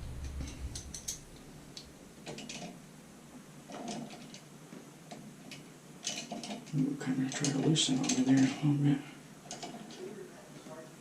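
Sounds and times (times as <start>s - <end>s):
metal washer and nut clicking: 0.2s - 1.3s.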